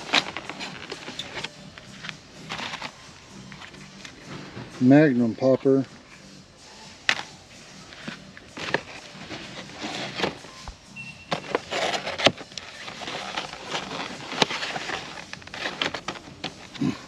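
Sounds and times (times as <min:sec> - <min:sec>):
rustling: 0:00.0 - 0:04.5, 0:07.1 - 0:17.0
brief high beep: 0:10.9 - 0:11.4.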